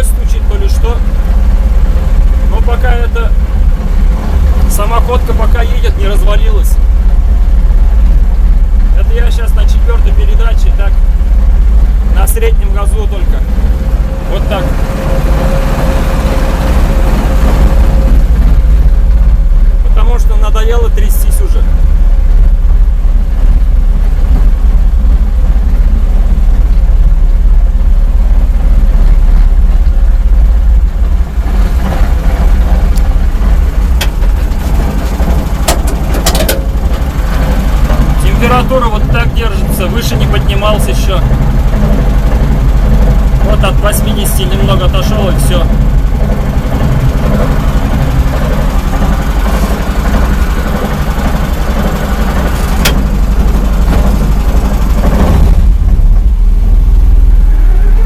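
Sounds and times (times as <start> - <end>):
chassis rattling: 0.0 - 58.0
engine running while driving: 0.0 - 58.0
sharp knocks or clatters: 35.6 - 37.0.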